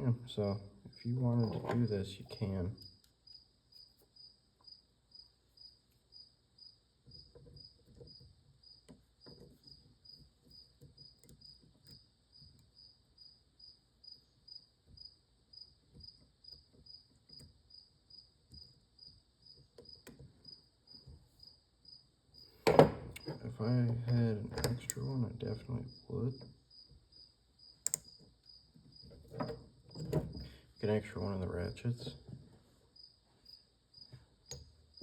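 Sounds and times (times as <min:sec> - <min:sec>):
cricket chirping: 0:00.0 - 0:31.9, 0:32.9 - 0:35.0
tool handling knocks: 0:22.6 - 0:25.0.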